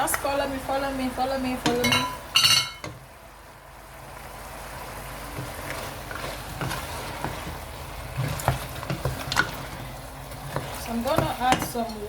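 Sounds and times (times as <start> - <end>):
food sizzling in hot oil: 0.0 - 12.0.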